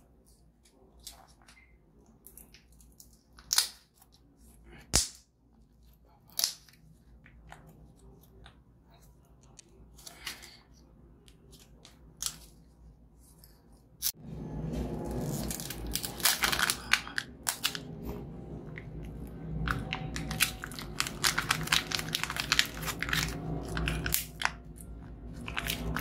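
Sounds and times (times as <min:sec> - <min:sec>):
biscuits snapping: 0:00.7 - 0:10.6, 0:15.2 - 0:18.0, 0:19.6 - 0:26.0
plastic wrapper rustling: 0:15.1 - 0:17.9, 0:19.7 - 0:26.0
wrapper crushing and crinkling: 0:15.1 - 0:17.9, 0:19.7 - 0:24.7, 0:25.3 - 0:26.0.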